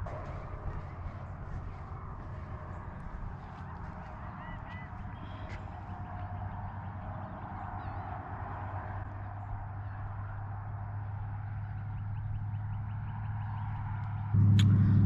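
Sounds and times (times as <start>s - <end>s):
low hum: 0.0s - 15.0s
faint bird chirps: 0.2s - 8.6s.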